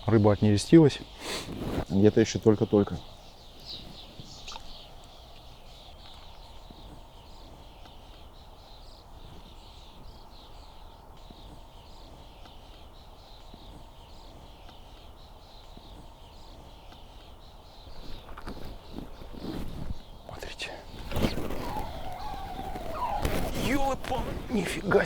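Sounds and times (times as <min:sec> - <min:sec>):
birds chirping and trilling: 0:00.0 - 0:25.0.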